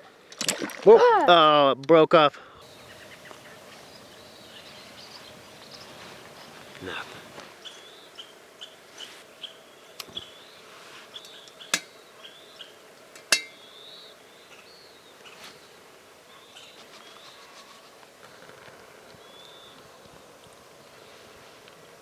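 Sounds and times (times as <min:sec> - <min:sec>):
small bird chirping: 0:02.6 - 0:12.8.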